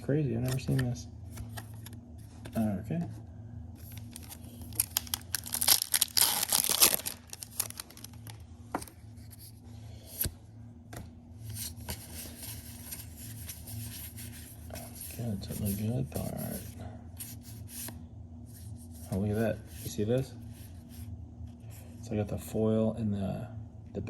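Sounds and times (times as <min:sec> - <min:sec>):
wrapper and cards rustling: 0:03.8 - 0:08.9
foil wrapper tearing: 0:03.9 - 0:08.4.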